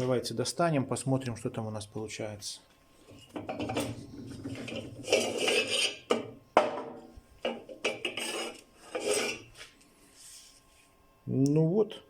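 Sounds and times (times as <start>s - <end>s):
metal scraping and clanking: 3.2s - 6.1s, 7.9s - 9.5s.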